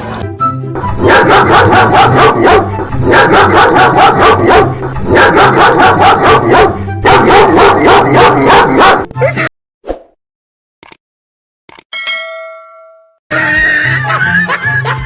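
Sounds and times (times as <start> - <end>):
dog barking rapidly: 0.9 - 9.1.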